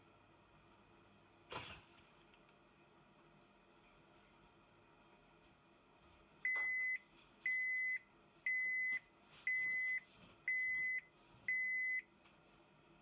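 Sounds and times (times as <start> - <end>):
washing machine buzzer beeping: 6.5 - 12.1.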